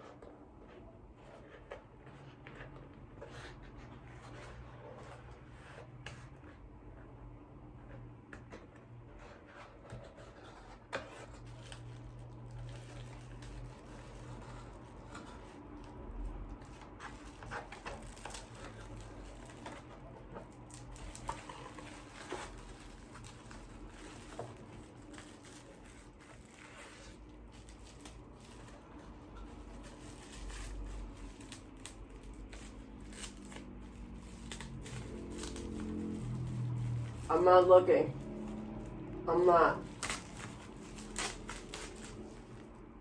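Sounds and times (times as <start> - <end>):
wrapping rustling and tearing: 9.4 - 43.0.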